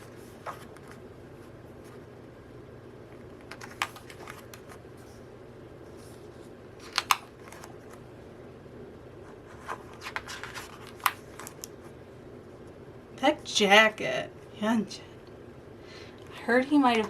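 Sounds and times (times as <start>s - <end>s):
paper rustling and clicking: 0.0s - 1.0s, 3.4s - 4.8s, 6.8s - 8.0s, 9.5s - 11.8s
faint room hum: 0.0s - 17.0s.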